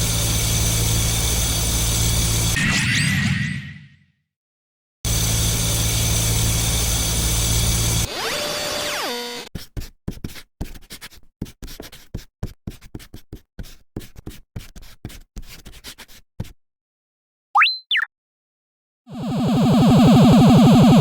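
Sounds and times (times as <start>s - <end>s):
short falling stepped tone: 17.6s - 18.1s
whistle-like rising tone: 17.6s - 18.1s.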